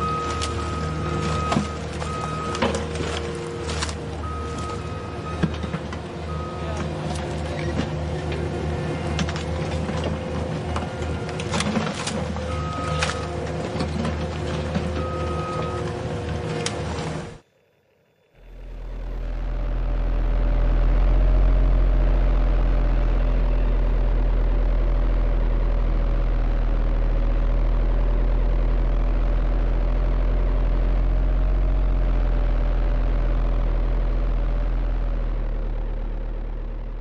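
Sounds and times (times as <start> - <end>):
electric motor drone with whine: 15.9 - 37.0.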